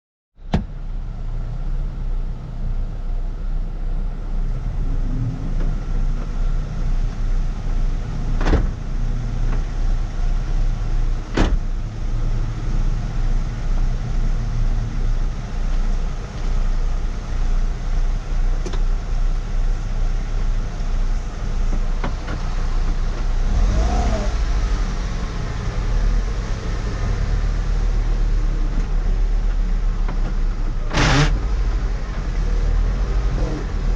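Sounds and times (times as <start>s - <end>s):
car engine running: 0.4s - 33.9s.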